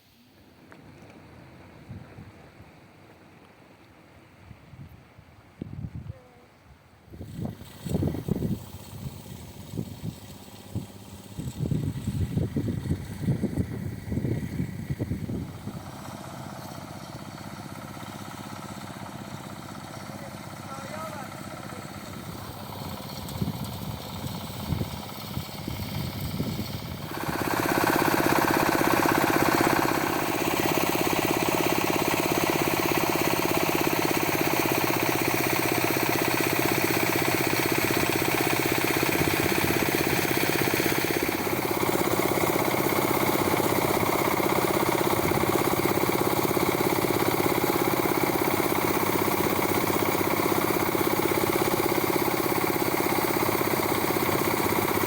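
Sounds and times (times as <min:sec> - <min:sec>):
combine harvester engine running: 0:07.2 - 0:55.0.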